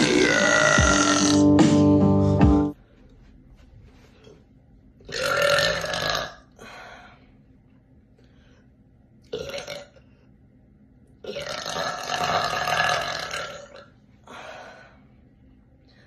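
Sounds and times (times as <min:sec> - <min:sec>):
woman burping: 0:00.0 - 0:01.4, 0:11.2 - 0:13.9.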